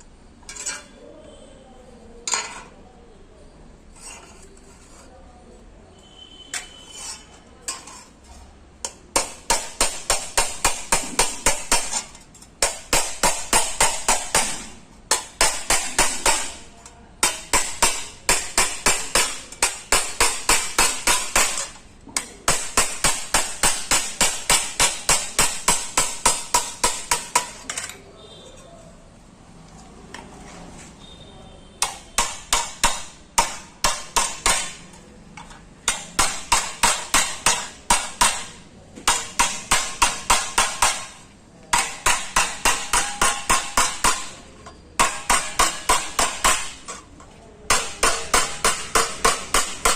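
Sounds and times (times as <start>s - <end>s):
hammer striking metal panel: 8.8s - 27.9s, 31.8s - 34.9s, 35.8s - 47.0s, 47.7s - 49.9s.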